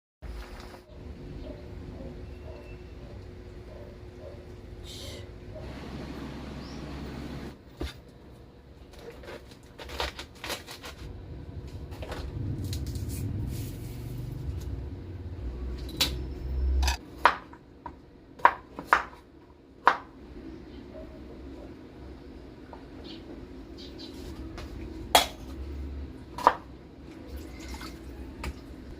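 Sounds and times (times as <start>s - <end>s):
low rumble: 11.0s - 16.9s.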